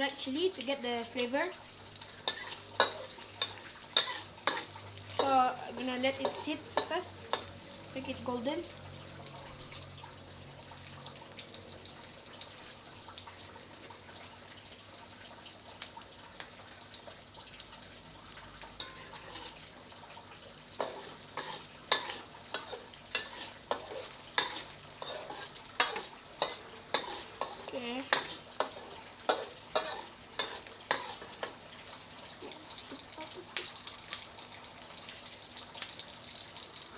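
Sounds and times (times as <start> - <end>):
food sizzling in oil: 0.0 - 36.9
knocks and scrapes in pan: 2.3 - 5.3, 20.8 - 31.6.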